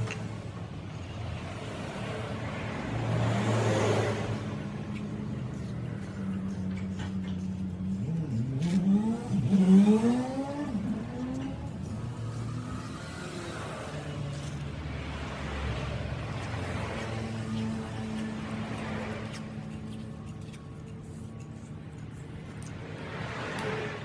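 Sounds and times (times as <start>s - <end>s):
motorcycle engine revving: 8.1s - 15.6s.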